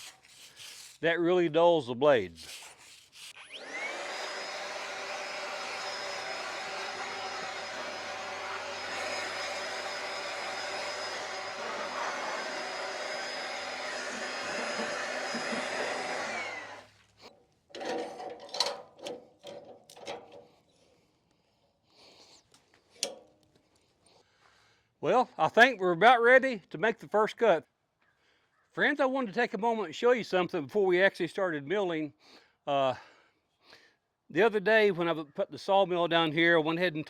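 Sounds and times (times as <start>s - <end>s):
electric power tool running: 3.2s - 17.0s.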